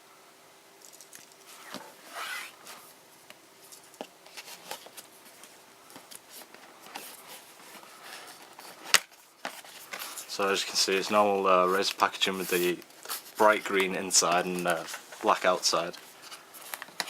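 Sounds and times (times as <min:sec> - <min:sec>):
cardboard scraping slide: 0:01.5 - 0:02.9
cardboard rustling: 0:03.7 - 0:17.0.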